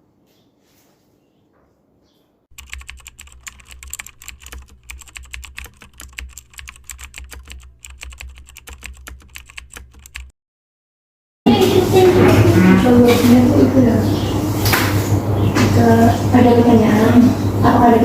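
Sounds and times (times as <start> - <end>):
rapid irregular clicking: 2.5 - 10.3.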